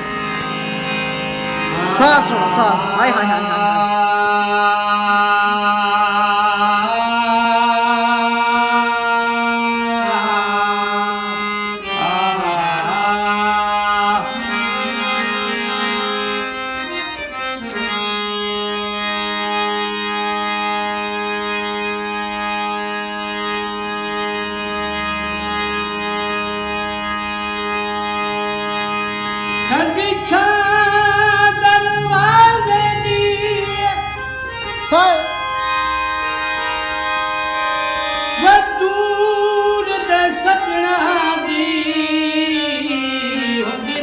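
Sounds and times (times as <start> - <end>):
man singing long notes: 0.5 - 15.8, 29.6 - 35.6, 38.3 - 44.0.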